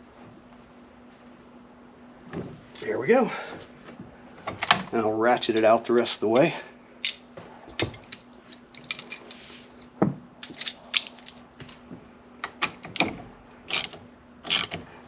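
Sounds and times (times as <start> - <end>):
hand ratchet clicking: 13.7 - 14.9.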